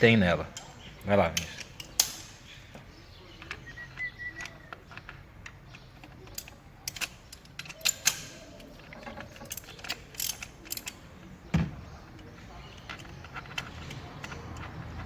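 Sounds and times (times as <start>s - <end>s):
hand tools clicking and clinking: 0.4s - 15.0s.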